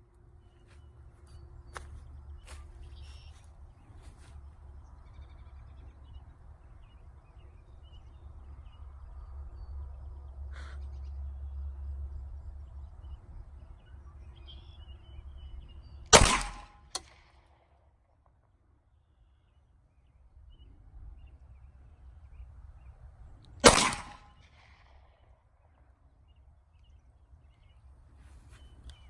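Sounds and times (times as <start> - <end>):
pistol shot: 16.1 - 17.4, 23.6 - 24.8
sharp crack: 16.1 - 17.6, 23.6 - 25.1.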